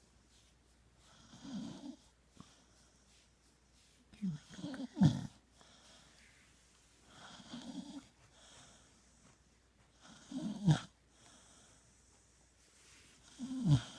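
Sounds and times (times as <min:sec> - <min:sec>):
pet snoring: 0:01.0 - 0:02.1, 0:04.4 - 0:05.4, 0:07.2 - 0:08.1, 0:10.0 - 0:11.0, 0:13.2 - 0:13.9.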